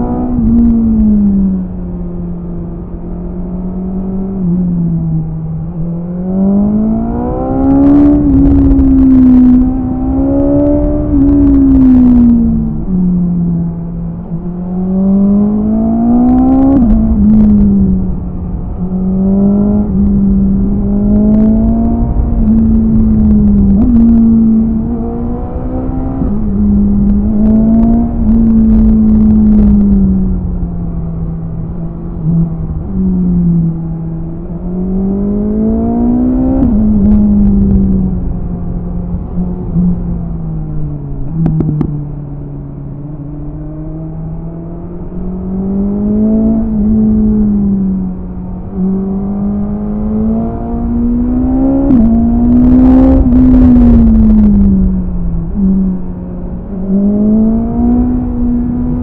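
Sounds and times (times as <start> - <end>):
motorcycle engine revving: 2.6 - 59.0.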